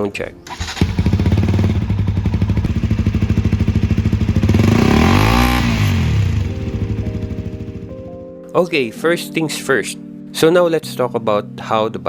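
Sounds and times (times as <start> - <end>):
motorcycle engine idling: 0.5 - 8.2.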